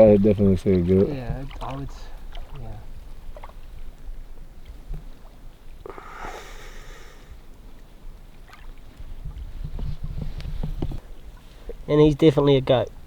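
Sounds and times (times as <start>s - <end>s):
wind buffeting microphone: 7.3s - 13.0s.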